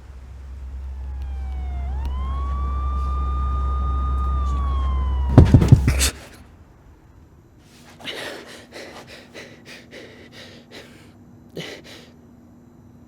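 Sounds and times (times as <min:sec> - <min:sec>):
faint steady hum: 0:00.0 - 0:13.0
person gasping and breathing: 0:05.8 - 0:06.4, 0:07.9 - 0:12.1.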